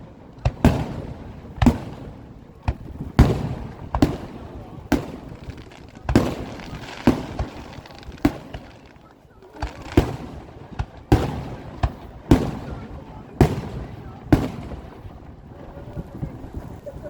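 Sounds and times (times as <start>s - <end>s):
fireworks shells bursting: 4.9s - 9.0s.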